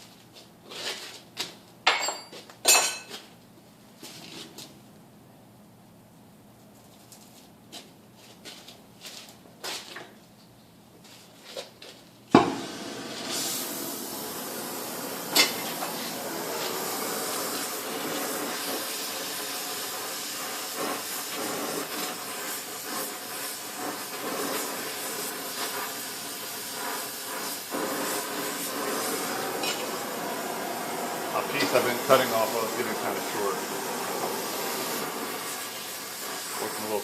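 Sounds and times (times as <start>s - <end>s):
gas torch hissing: 12.3s - 37.0s
gas torch lighting with a pop: 12.3s - 37.0s.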